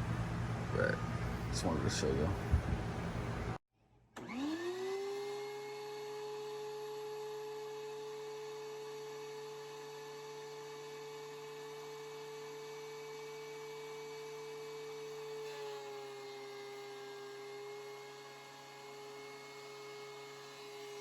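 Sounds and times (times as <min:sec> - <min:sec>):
thickness planer motor whine: 0:04.2 - 0:21.0.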